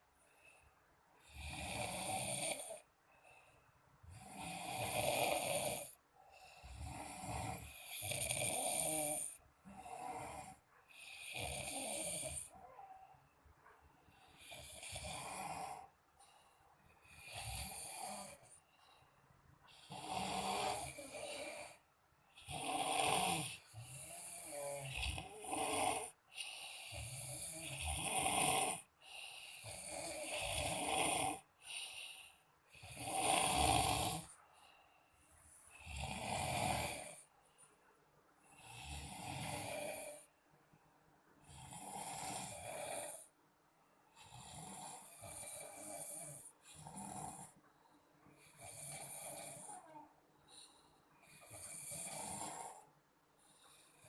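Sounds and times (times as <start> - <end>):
men snoring: 4.2 - 6.0, 6.6 - 12.6, 14.4 - 15.9, 17.1 - 18.5, 19.8 - 21.8, 22.4 - 34.3, 35.8 - 37.2, 38.6 - 40.3, 41.5 - 43.3, 44.2 - 47.6, 51.2 - 52.9.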